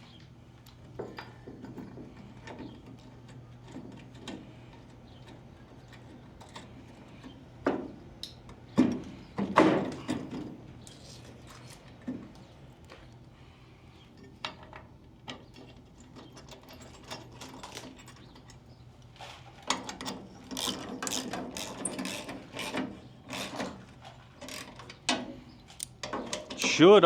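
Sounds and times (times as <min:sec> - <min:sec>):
metal tools clicking and clanking: 0:19.4 - 0:27.0.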